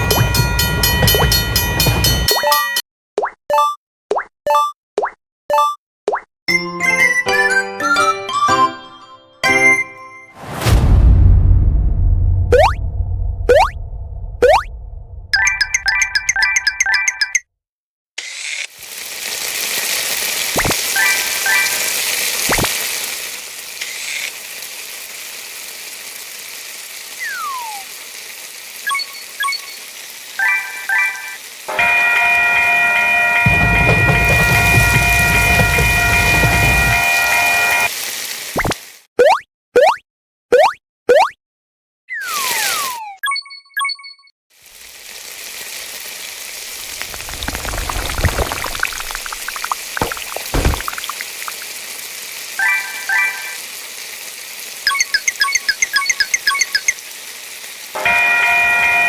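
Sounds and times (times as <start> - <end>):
bright chime dings: 0.0 - 2.8
low thuds: 10.6 - 15.3
hiss with crackles: 18.7 - 30.4, 44.6 - 54.8
falling whistle: 27.2 - 27.9, 42.1 - 43.2.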